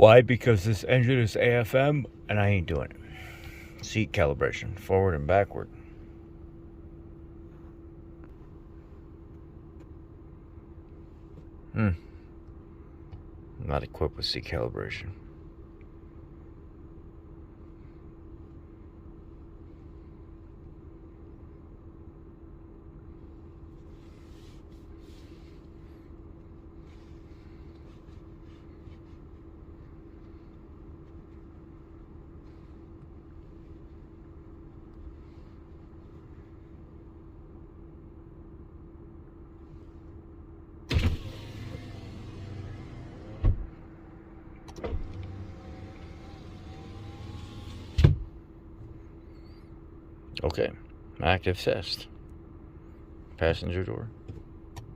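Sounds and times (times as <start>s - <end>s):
vehicle low hum: 0.0s - 54.9s
power window motor running: 40.9s - 48.4s.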